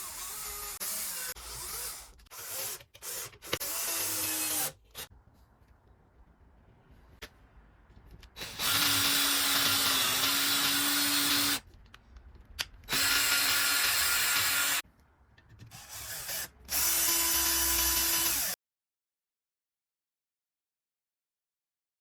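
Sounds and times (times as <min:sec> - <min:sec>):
power tool motor whirring: 0:08.4 - 0:11.6, 0:12.9 - 0:14.8, 0:15.8 - 0:18.6.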